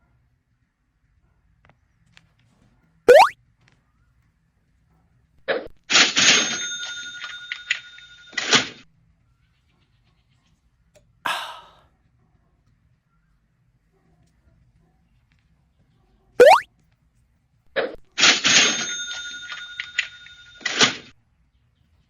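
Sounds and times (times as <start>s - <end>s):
bell-like ringing: 6.3s - 8.4s, 18.3s - 20.8s.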